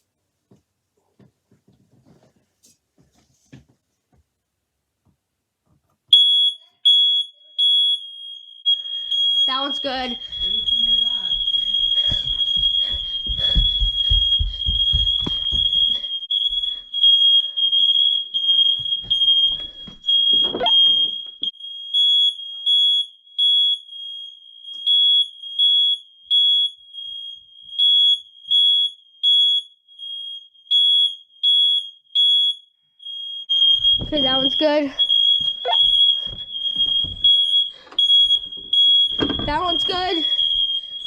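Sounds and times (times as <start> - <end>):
smoke alarm beeping: 6.1 - 41.0
low thumps: 10.2 - 16.0, 33.8 - 34.6.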